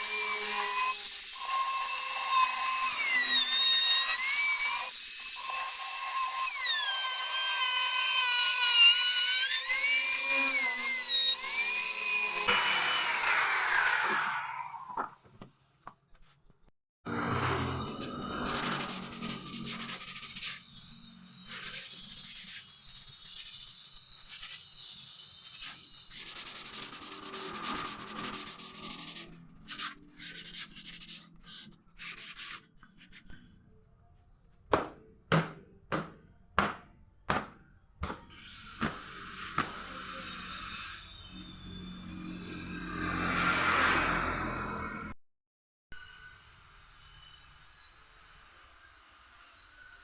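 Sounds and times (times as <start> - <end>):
sandpaper rasping on wood: 18.5 - 33.3
sharp knocks on wood: 34.7 - 39.0.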